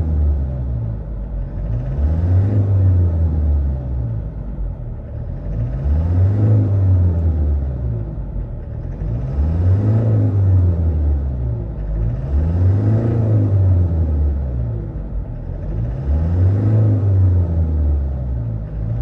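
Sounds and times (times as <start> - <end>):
diesel engine revving: 0.0 - 19.0.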